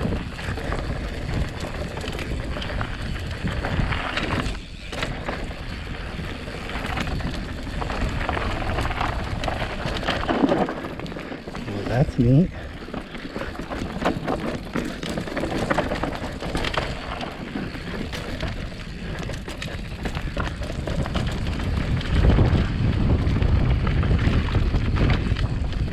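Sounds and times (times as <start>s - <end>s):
wind on microphone: 0.0s - 10.6s, 17.8s - 25.9s
bike rattling over rough ground: 0.0s - 25.9s
bike tyres on dirt: 0.0s - 25.9s.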